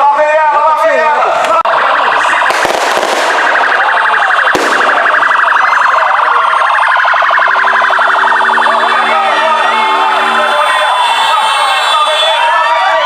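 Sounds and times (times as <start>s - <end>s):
electronic siren wailing: 1.6s - 13.0s
steady horn-like tone: 7.5s - 12.5s.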